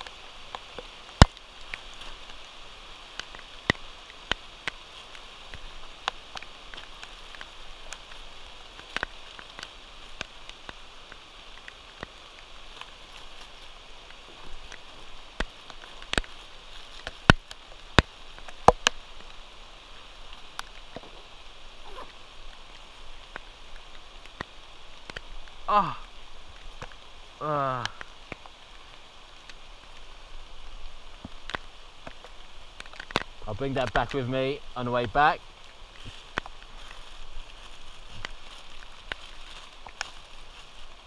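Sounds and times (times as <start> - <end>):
rain hissing: 0.0 - 41.0.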